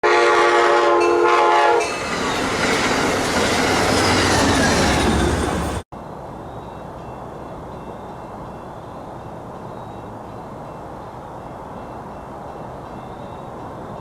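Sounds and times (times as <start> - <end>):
train horn: 0.0 - 2.3
train passing at speed: 0.0 - 14.0.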